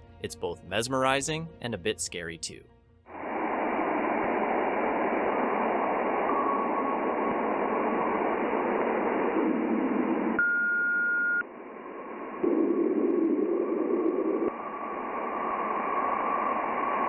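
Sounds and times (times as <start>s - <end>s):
radio static hiss: 3.1s - 10.4s, 11.4s - 17.0s
steady beep: 10.4s - 11.4s.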